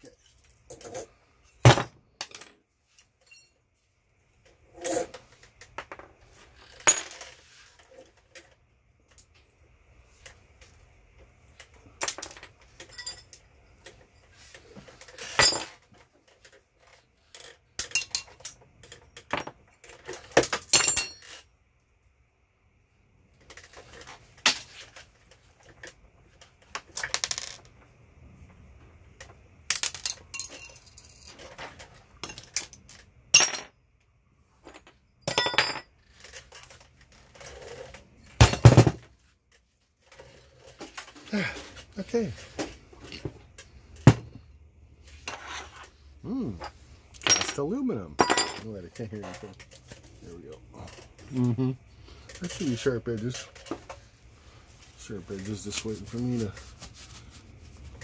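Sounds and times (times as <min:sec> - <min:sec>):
metal tools clinking on table: 0:00.0 - 0:03.6, 0:06.6 - 0:07.4, 0:12.0 - 0:15.8, 0:17.4 - 0:21.4, 0:29.7 - 0:33.7, 0:34.7 - 0:36.8, 0:46.5 - 0:50.0.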